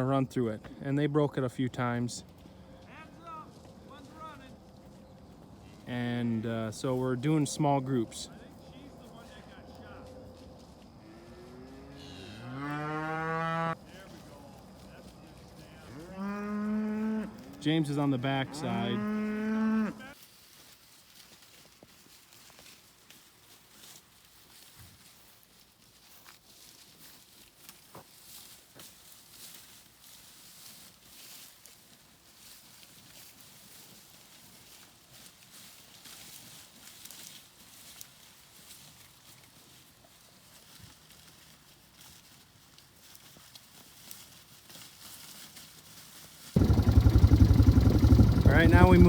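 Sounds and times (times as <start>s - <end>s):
footsteps on dry corn stalks: 1.9s - 13.1s, 13.8s - 49.0s
cows mooing: 11.1s - 13.8s, 15.8s - 20.1s, 46.6s - 49.0s.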